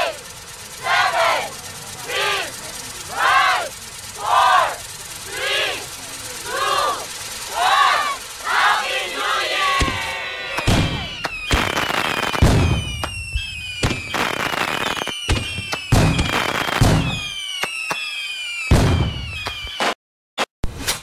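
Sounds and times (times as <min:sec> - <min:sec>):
falling whistling tones: 0:00.0 - 0:20.0
firecracker bangs: 0:09.4 - 0:20.0.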